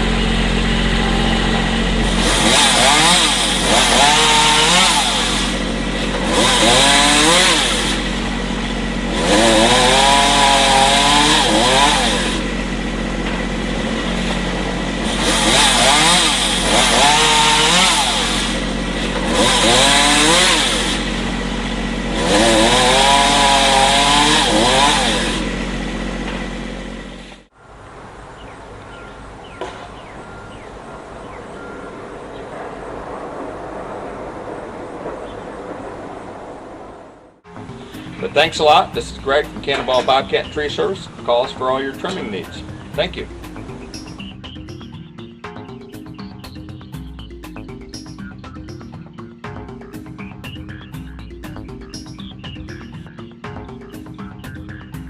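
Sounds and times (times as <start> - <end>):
motorized saw cutting branches: 0.0 - 27.5, 37.5 - 45.3
idling engine hum: 0.0 - 55.0
outdoor background: 0.0 - 55.0.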